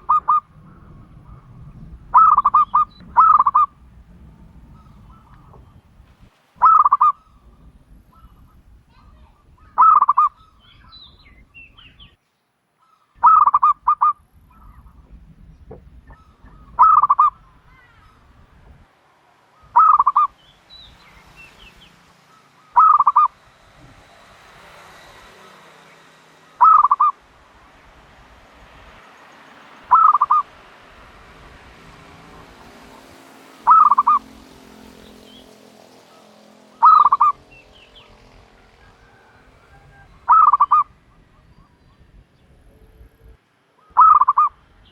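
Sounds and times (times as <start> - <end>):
dove cooing: 0.0 - 3.8, 6.6 - 7.5, 8.1 - 10.8, 13.2 - 15.2, 16.0 - 18.2, 19.6 - 20.3, 22.3 - 23.4, 26.6 - 27.2, 29.9 - 30.6, 32.3 - 34.4, 36.1 - 44.6.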